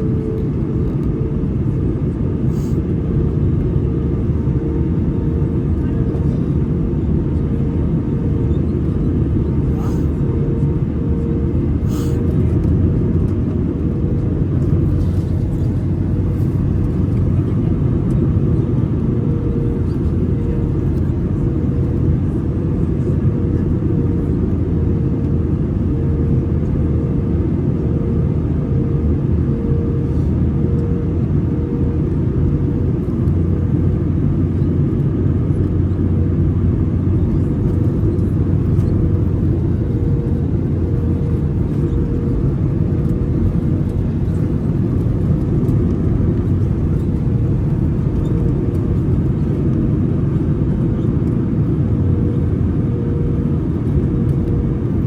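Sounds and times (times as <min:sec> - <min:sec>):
aircraft engines rumbling: 0:00.0 - 0:55.0
faint pulsing hum: 0:00.0 - 0:55.0.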